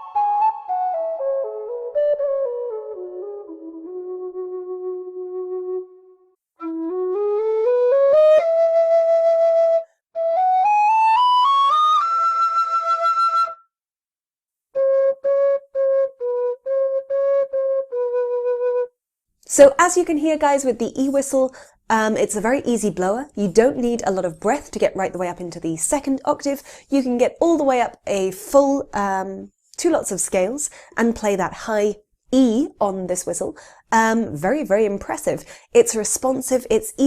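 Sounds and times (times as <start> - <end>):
whistle playing a tune: 0.0 - 13.7.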